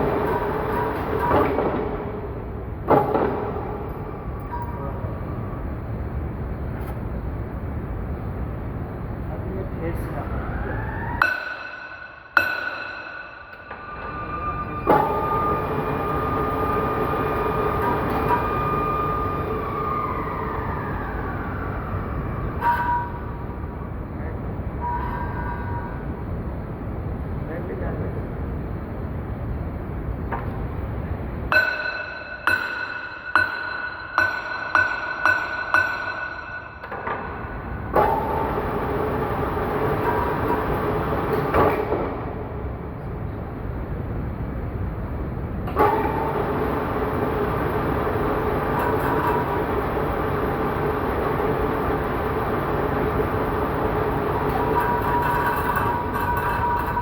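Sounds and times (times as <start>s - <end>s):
lathe running with high whine: 0.0s - 6.7s, 13.6s - 24.1s, 37.6s - 41.7s, 45.8s - 57.0s.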